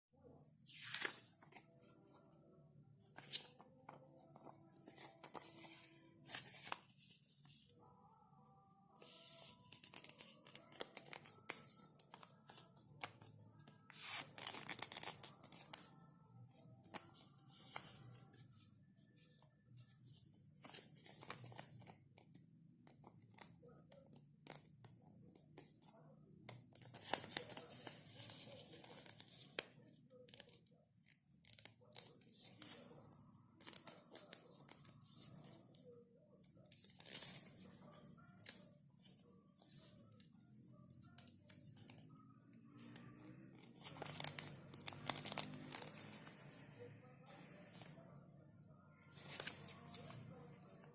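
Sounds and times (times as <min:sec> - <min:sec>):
paper rustling and folding: 0:00.7 - 0:02.2, 0:03.0 - 0:07.9, 0:09.0 - 0:22.0, 0:36.5 - 0:50.9.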